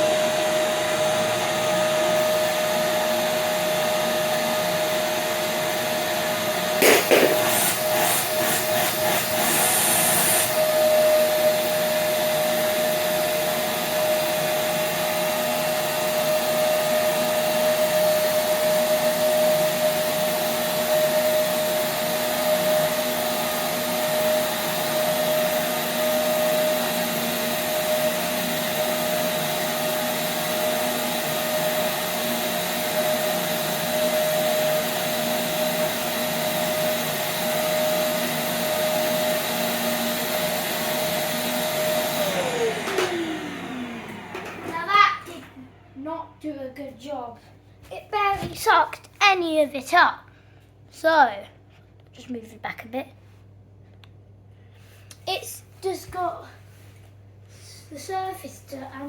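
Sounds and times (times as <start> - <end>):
vacuum cleaner on carpet: 0.0 - 46.2.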